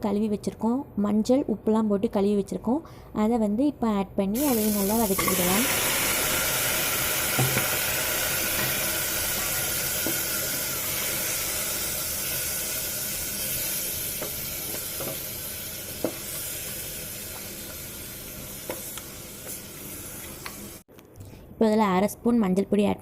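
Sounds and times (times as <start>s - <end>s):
meat sizzling in hot oil: 4.4s - 20.8s.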